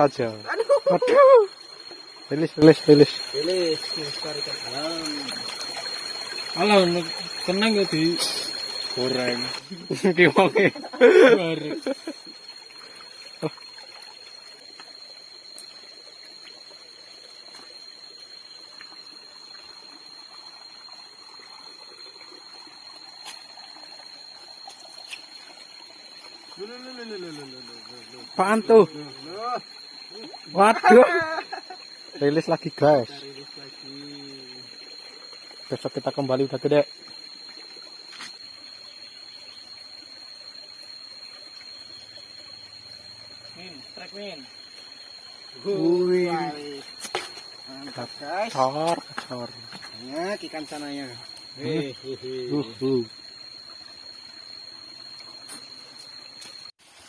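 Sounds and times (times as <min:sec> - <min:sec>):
thin high tone: 0:00.0 - 0:13.6, 0:26.5 - 0:36.9, 0:41.5 - 0:53.1
stream trickling: 0:00.0 - 0:57.0.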